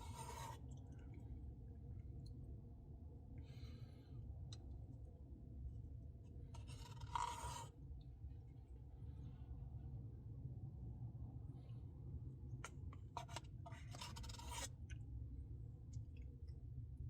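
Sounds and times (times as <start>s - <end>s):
spoon scraping ice cream: 0.0s - 0.8s, 6.6s - 7.8s, 12.6s - 14.9s
low steady hum: 0.0s - 17.0s.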